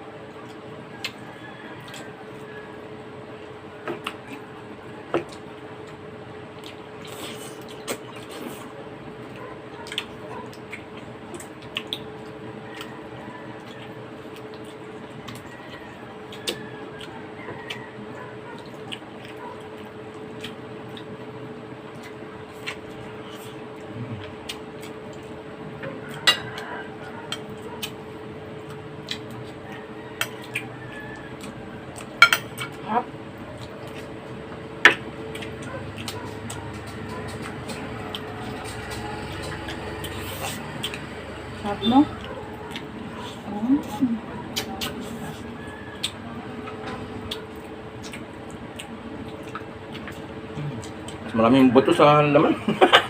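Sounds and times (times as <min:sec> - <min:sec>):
wet eating sounds: 0:00.2 - 0:51.9
steady hum: 0:02.0 - 0:53.0
cutlery clinking on dishes: 0:26.2 - 0:26.6.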